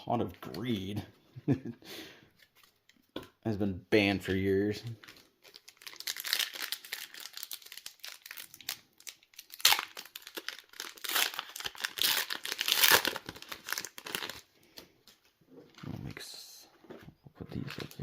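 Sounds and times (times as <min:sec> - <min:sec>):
foil wrapper crinkling: 0:05.0 - 0:14.5.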